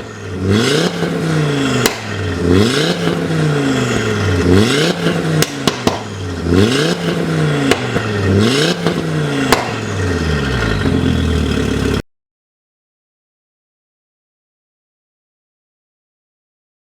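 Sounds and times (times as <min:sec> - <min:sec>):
car engine revving: 0:00.0 - 0:12.0
exhaust pops and bangs: 0:01.8 - 0:11.9.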